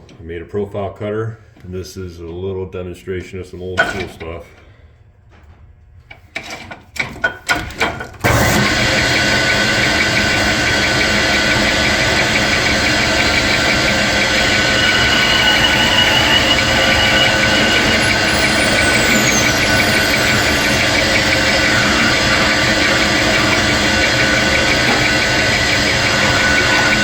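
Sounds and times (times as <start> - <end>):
metal lathe running: 8.3 - 27.0.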